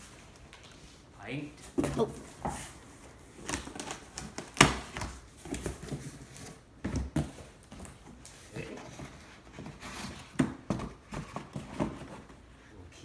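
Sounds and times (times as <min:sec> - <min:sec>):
cardboard box knocks and scuffs: 0:04.6 - 0:08.2.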